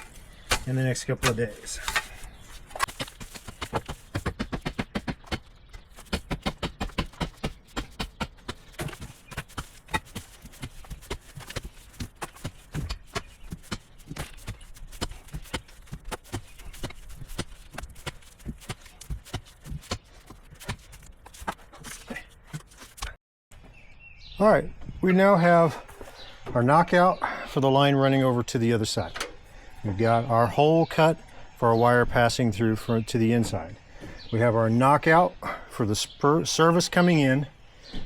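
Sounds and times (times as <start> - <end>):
rapid sharp knocks: 3.5 - 10.3.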